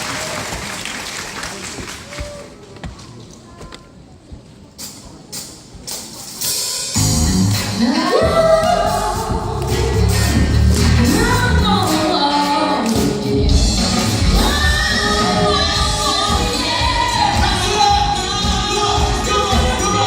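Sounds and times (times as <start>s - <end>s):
band playing live: 6.2s - 20.0s.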